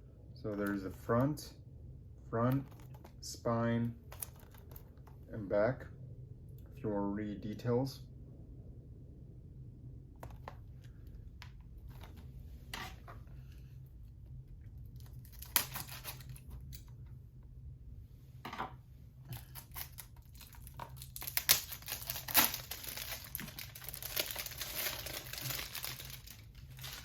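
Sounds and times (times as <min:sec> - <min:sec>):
plastic film crinkling: 0:04.0 - 0:05.0, 0:15.0 - 0:16.5, 0:19.4 - 0:27.0
plastic film tearing and snapping: 0:15.0 - 0:16.8, 0:19.3 - 0:27.0.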